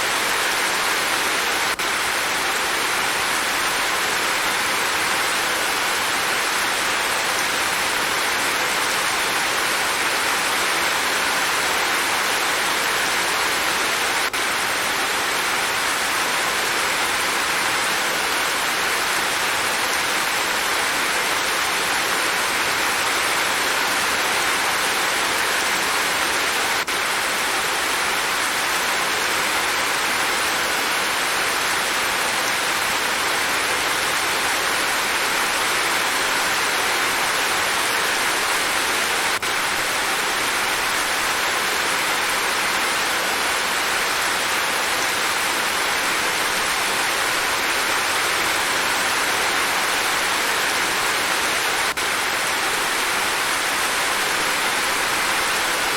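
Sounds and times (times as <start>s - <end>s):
steady rain falling: 0.0s - 55.9s.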